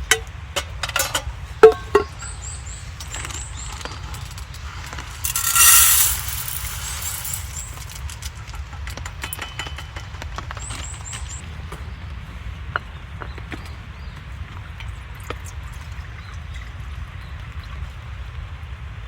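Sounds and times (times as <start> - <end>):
cooking gear clicks and clinks: 0.6 - 11.4.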